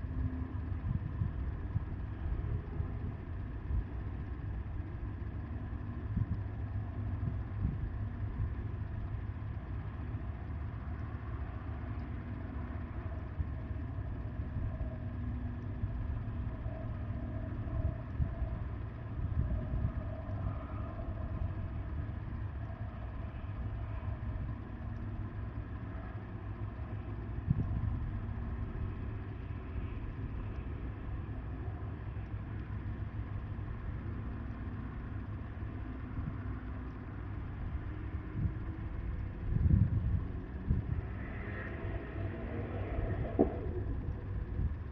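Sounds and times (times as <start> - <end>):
wind buffeting microphone: 0.0 - 9.8, 15.7 - 32.0, 36.0 - 44.9.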